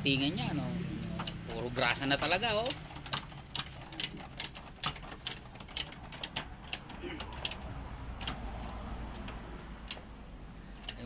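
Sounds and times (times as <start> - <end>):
metallic hand tool clicks: 10.8 - 11.0.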